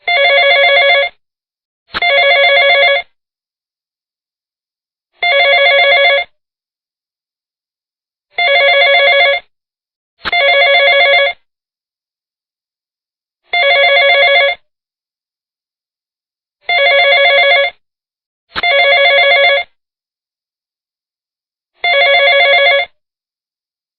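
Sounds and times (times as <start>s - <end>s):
telephone ringing: 0.0s - 1.2s, 2.0s - 3.1s, 5.2s - 6.3s, 8.4s - 9.5s, 10.3s - 11.4s, 13.5s - 14.6s, 16.7s - 17.8s, 18.6s - 19.8s, 21.8s - 23.0s.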